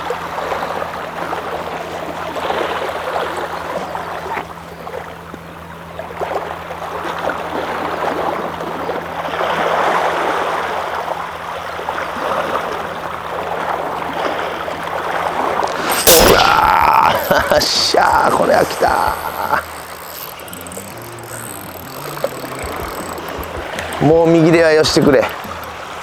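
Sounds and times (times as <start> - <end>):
faint low hum: 15.7 - 26.0.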